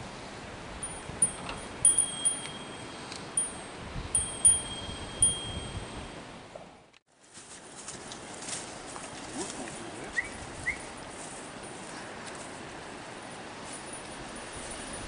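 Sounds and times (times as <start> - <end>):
wind chime ringing: 0.8 - 6.3.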